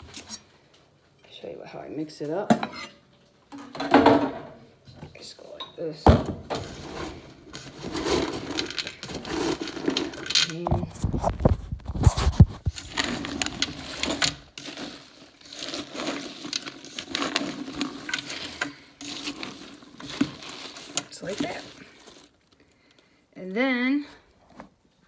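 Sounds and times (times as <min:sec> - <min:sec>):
vegetables rustling and scraping: 0:06.4 - 0:23.1.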